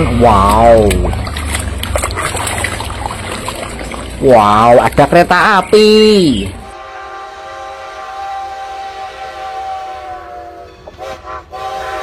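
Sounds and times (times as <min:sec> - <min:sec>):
train horn blast: 0:06.6 - 0:12.0.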